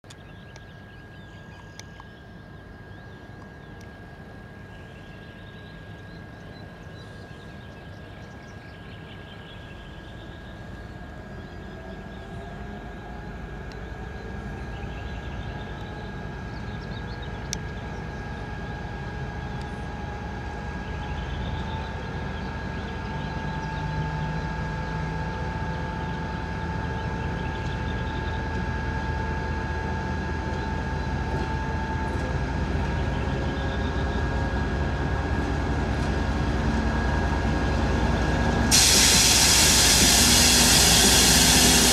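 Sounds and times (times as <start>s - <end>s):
engine whine: 0.0s - 41.9s
diesel locomotive engine running: 9.9s - 41.9s
steady high-pitched tone: 38.7s - 41.9s.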